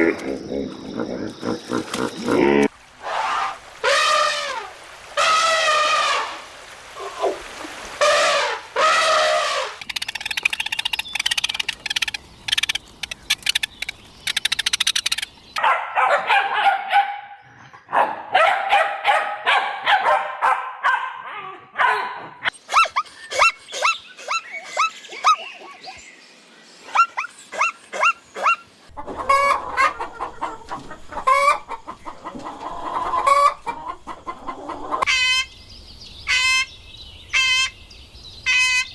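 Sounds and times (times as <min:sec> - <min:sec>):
chickens clucking: 0:28.0 - 0:35.4.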